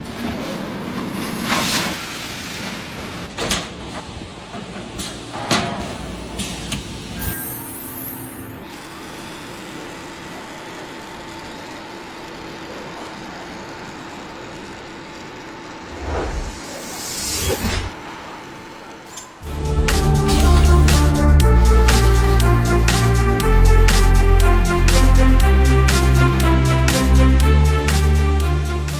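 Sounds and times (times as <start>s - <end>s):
steady machine hum: 8.4s - 26.9s.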